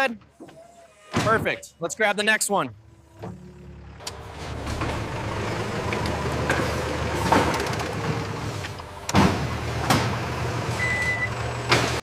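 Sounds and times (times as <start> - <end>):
vehicle engine humming: 2.0 - 12.0
knocks and clunks: 3.0 - 10.3.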